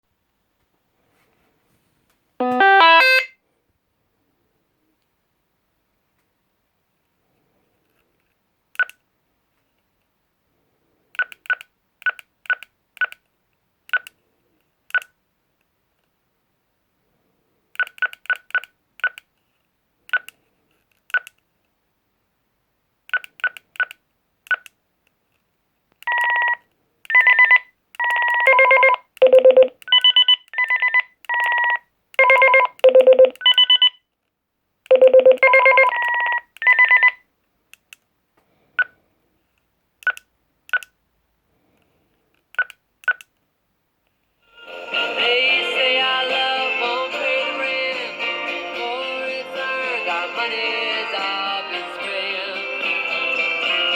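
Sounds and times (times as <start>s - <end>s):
walkie-talkie alert tones: 2.4s - 3.3s
walkie-talkie short beeps: 2.4s - 3.3s, 27.1s - 34.0s.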